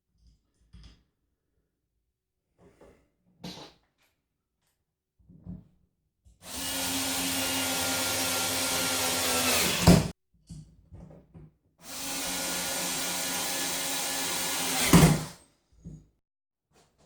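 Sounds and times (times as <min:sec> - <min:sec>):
power drill running: 0:06.4 - 0:10.1, 0:11.8 - 0:15.3.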